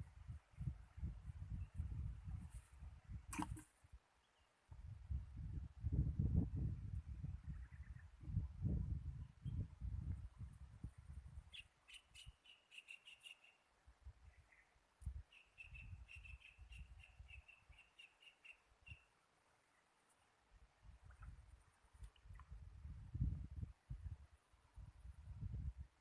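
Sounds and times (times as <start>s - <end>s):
small bird chirping: 11.5s - 13.6s, 14.3s - 19.1s.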